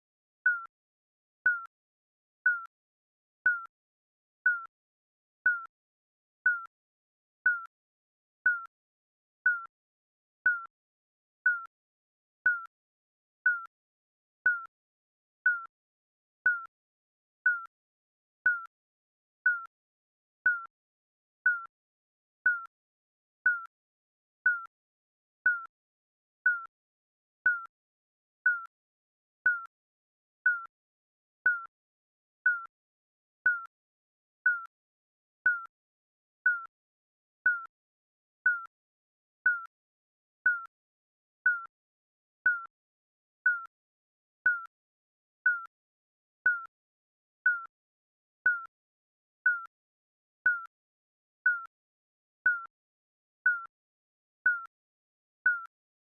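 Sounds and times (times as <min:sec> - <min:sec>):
countdown timer beep: 0:00.5 - 0:00.7, 0:02.5 - 0:02.7, 0:20.5 - 0:20.7, 0:40.5 - 0:40.7, 0:55.5 - 0:55.7.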